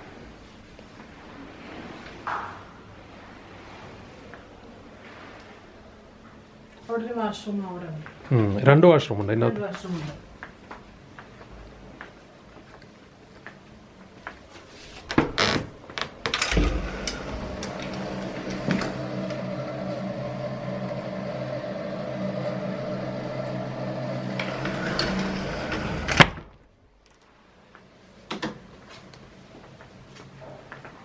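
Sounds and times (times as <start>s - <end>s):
machine hum: 15.9s - 26.7s.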